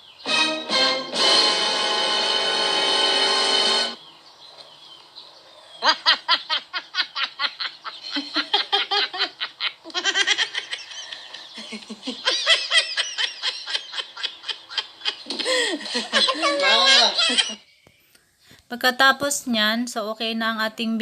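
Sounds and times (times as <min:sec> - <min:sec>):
high-pitched laughter: 0:05.8 - 0:17.7.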